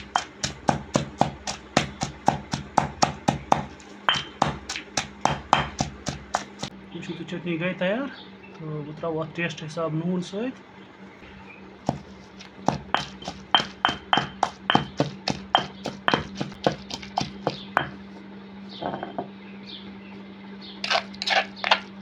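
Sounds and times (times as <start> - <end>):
utensil knocking in a bowl: 0.0 - 6.7, 11.9 - 18.0.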